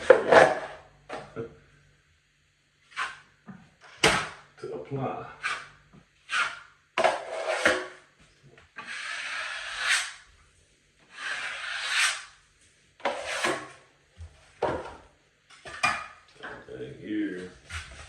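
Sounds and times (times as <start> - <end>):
taping knife scraping compound: 2.8 - 3.3, 5.4 - 8.0, 8.8 - 10.3, 11.0 - 12.4, 13.0 - 13.8.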